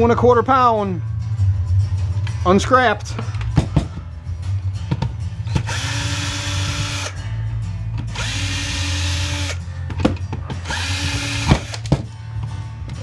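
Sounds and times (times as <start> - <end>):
power drill whining: 5.6 - 7.2, 8.1 - 9.6, 10.6 - 11.9.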